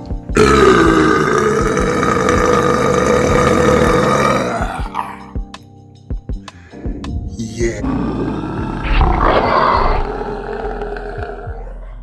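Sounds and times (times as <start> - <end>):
music with a beat: 0.0 - 0.4, 4.6 - 7.4
man burping: 0.4 - 5.3.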